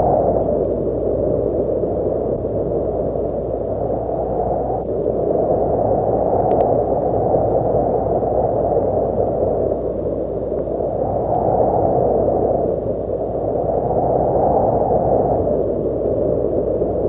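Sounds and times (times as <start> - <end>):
wind blowing: 0.0 - 17.0.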